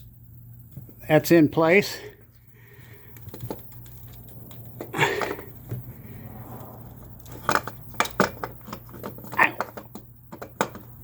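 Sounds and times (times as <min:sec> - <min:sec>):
rustling of wiring: 0:02.2 - 0:06.2.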